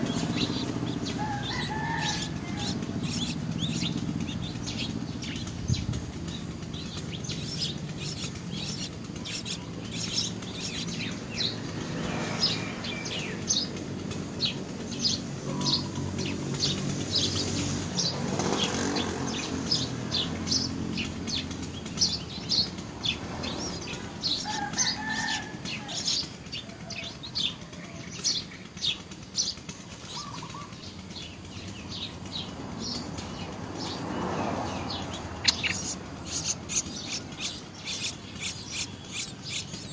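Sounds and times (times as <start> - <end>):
steady low hum: 0.0 - 17.1
lower bird calls: 0.0 - 39.9
small birds chirping: 0.0 - 39.9.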